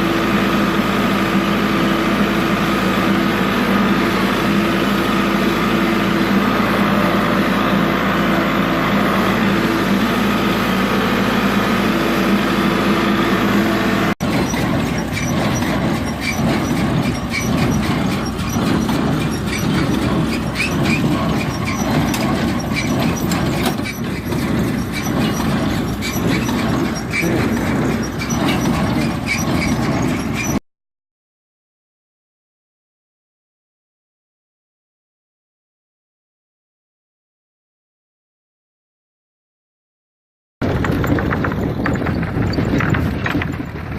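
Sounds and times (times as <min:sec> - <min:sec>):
tractor engine running: 0:00.0 - 0:30.6, 0:40.6 - 0:43.9
baler clattering and squeaking: 0:14.2 - 0:30.6, 0:40.6 - 0:43.9.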